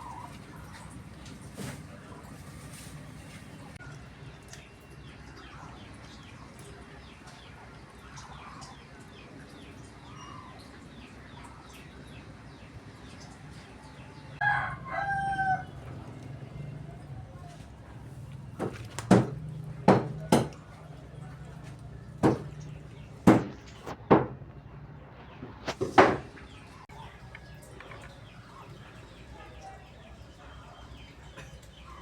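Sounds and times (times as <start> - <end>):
small birds chirping: 0.0 - 14.4, 15.4 - 32.0
rooster crowing: 14.3 - 16.2
sharp knocks: 18.6 - 20.6, 22.2 - 22.6, 23.2 - 24.5, 25.7 - 26.3.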